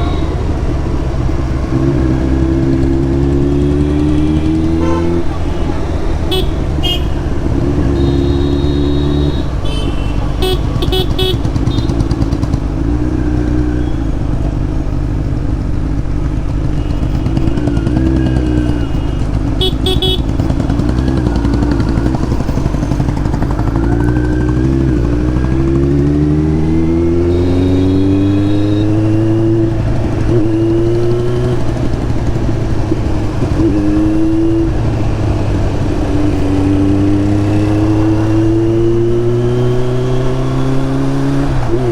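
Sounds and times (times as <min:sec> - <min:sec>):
motorcycle engine accelerating: 0:00.0 - 0:41.9
vehicle horn toots: 0:04.0 - 0:12.4, 0:16.6 - 0:23.1, 0:27.2 - 0:29.4.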